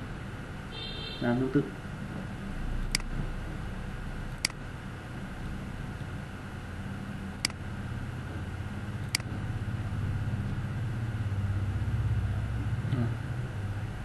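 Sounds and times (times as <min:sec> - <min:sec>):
computer mouse clicking: 0:02.8 - 0:03.1, 0:04.4 - 0:04.6, 0:07.4 - 0:07.6.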